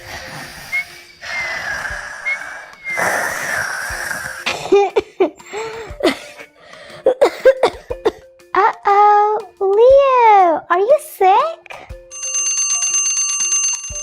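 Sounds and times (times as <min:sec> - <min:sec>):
child wheezing breaths: 0:00.0 - 0:08.3
soft music: 0:00.0 - 0:14.0
child coughing: 0:04.4 - 0:08.3.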